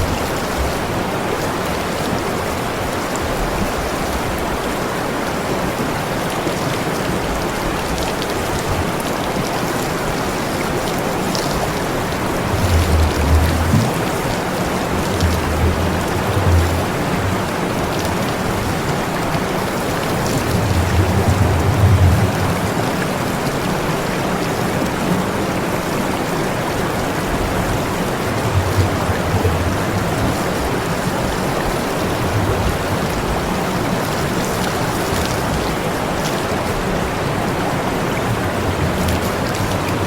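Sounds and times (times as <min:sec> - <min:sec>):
water spraying: 0:11.2 - 0:19.5.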